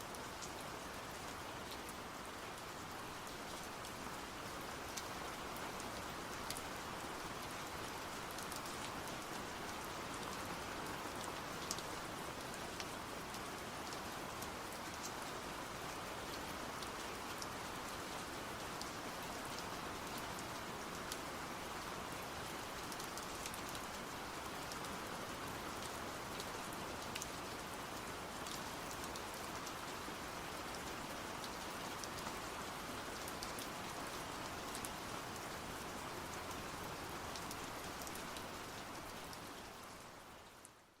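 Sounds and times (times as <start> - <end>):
steady rain falling: 0.0 - 41.0.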